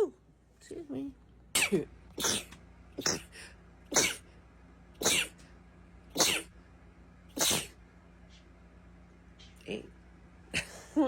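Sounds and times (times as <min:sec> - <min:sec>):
person sneezing: 0:01.6 - 0:04.3, 0:05.0 - 0:05.4, 0:06.1 - 0:06.5, 0:07.3 - 0:07.8.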